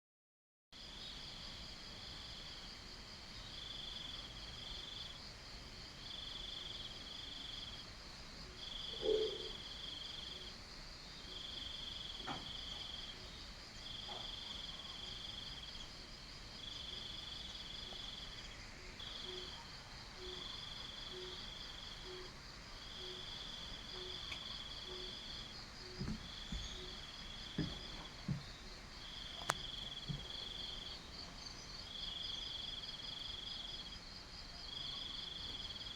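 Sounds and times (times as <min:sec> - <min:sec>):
crickets and cicadas trilling: 0:00.8 - 0:35.9
steady high insect buzz: 0:00.8 - 0:35.9
soft knocks: 0:25.9 - 0:28.6.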